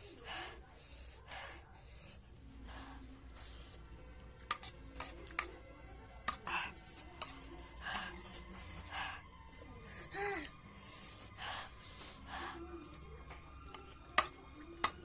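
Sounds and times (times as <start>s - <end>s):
cutlery clinking against a dish: 4.4s - 5.6s.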